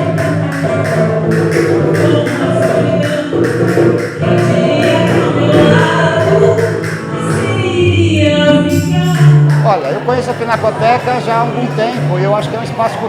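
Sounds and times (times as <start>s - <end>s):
woman singing: 0.0s - 9.6s
acoustic band playing: 0.0s - 13.0s.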